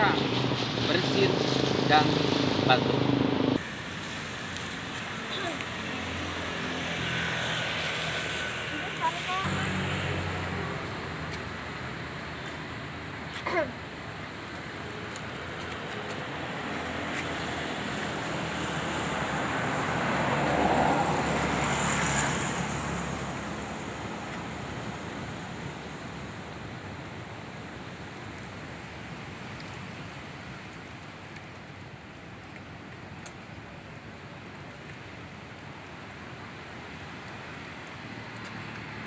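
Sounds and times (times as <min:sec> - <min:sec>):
road vehicle passing by: 0:00.0 - 0:12.8, 0:14.6 - 0:26.2, 0:37.8 - 0:39.0.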